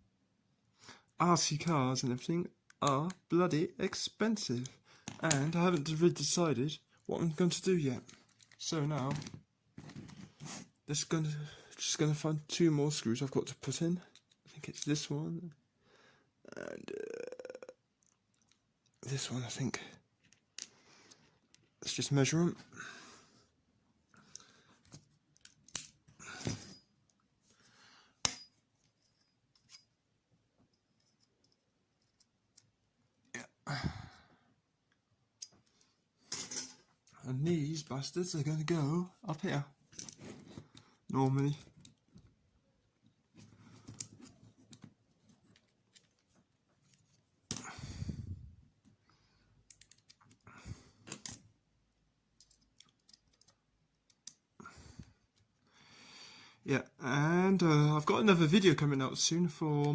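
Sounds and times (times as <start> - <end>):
plastic parts clicking and rustling: 7.9 - 10.4, 49.6 - 51.5, 52.3 - 54.5.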